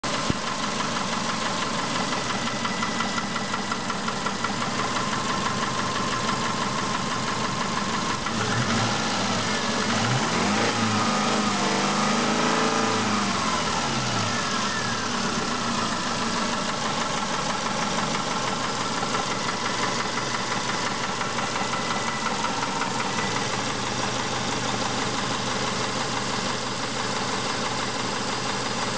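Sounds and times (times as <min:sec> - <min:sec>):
car engine idling with knock: 0:00.0 - 0:28.9
engine revving: 0:08.1 - 0:17.6.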